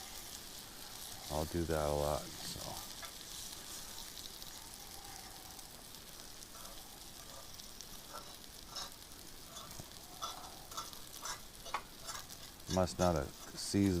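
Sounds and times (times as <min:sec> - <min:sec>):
egg sizzling faintly: 0:00.0 - 0:14.0
utensil scraping pan: 0:08.1 - 0:13.6.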